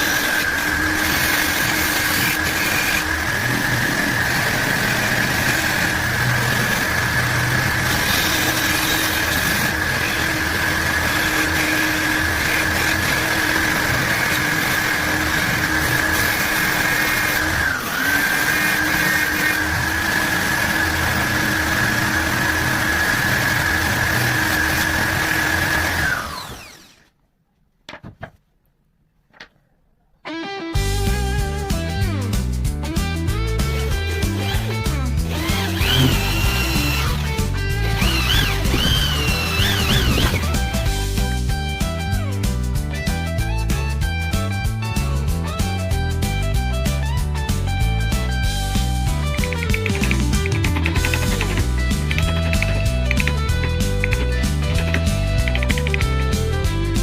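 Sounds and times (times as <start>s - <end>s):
electric cutter whining: 0.0s - 27.1s, 33.6s - 41.2s.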